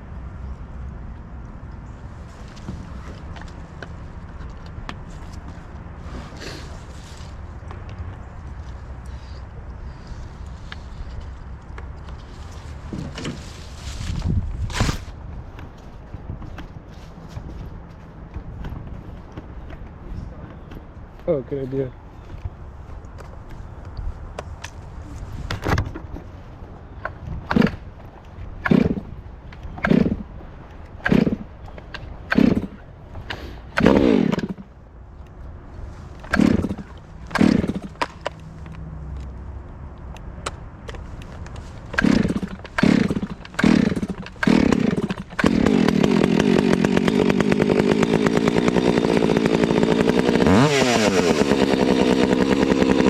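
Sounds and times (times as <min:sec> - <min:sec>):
chainsaw idling and revving: 0:28.6 - 0:29.1, 0:29.8 - 0:30.3, 0:31.0 - 0:31.5, 0:32.3 - 0:32.8, 0:33.8 - 0:34.7, 0:36.3 - 0:38.2, 0:41.9 - 0:53.0.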